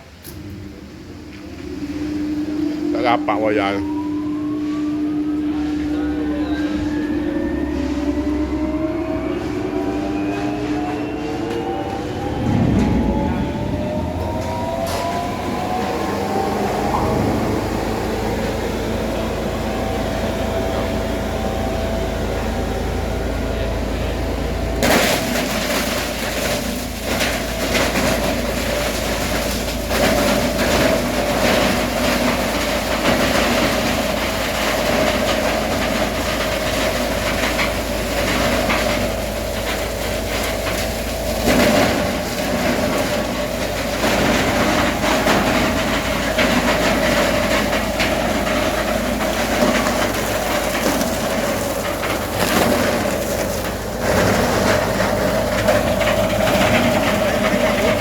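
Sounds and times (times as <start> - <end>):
shredding machine humming: 0.0 - 58.0
dense rattling and crackling: 12.2 - 58.0.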